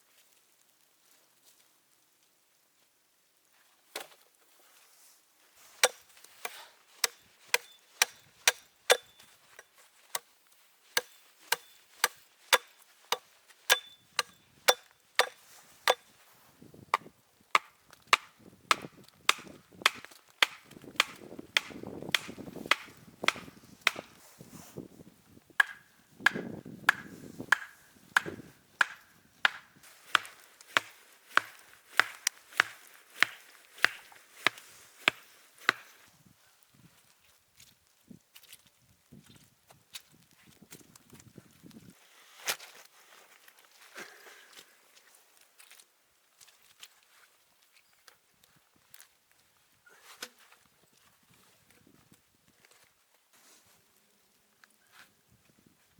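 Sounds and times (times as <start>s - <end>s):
wood chopping blows: 5.8s - 9.2s, 11.0s - 16.0s, 16.9s - 24.2s, 25.6s - 35.9s.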